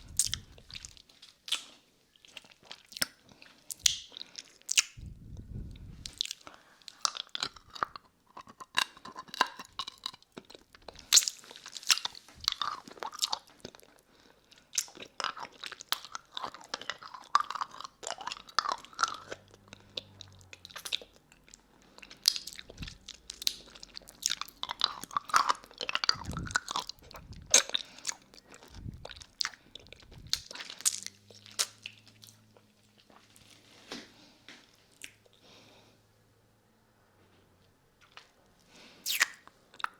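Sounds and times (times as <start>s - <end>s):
lollipop sucking and licking: 0.0s - 10.0s, 22.0s - 32.4s, 39.0s - 39.9s
candy clicking against teeth: 3.0s - 5.0s.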